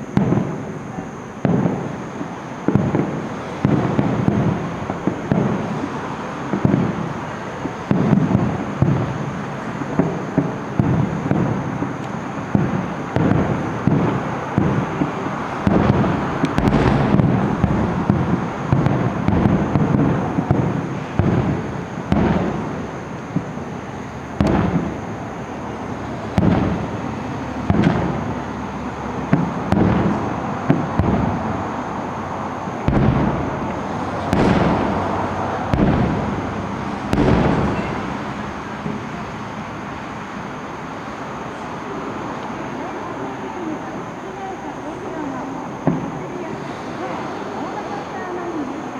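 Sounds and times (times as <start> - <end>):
firework shells bursting: 0.0 - 42.7
rumbling echoes: 12.7 - 40.3.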